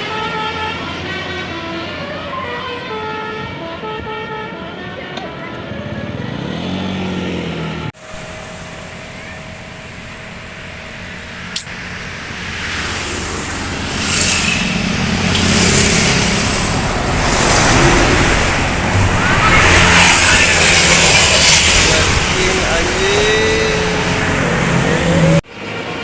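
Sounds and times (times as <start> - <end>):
large vehicle engine and tyres: 5.6 - 26.0
sharp click: 11.5 - 11.8.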